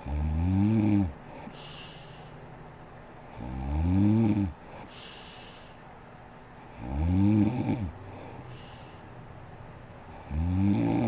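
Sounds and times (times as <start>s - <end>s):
woman snoring: 0.0s - 2.1s, 3.4s - 4.6s, 6.8s - 8.8s, 10.2s - 11.0s
breathy air rushing: 8.0s - 9.3s.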